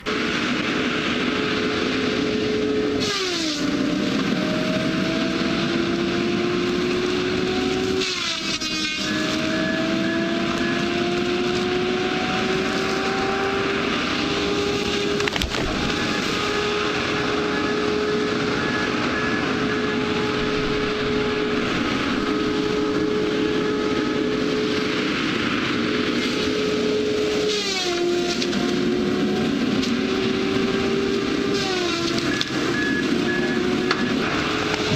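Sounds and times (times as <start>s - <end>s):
engine running at high revs: 0.0s - 34.9s.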